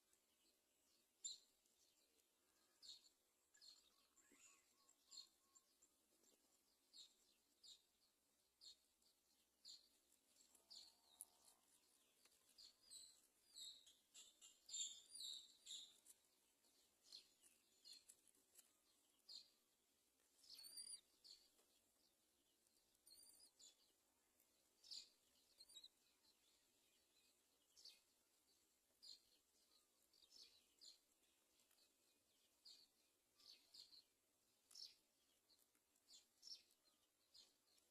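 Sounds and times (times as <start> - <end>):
faint bird chirps: 1.2 - 9.0, 9.6 - 19.6, 20.4 - 24.0, 24.8 - 28.2.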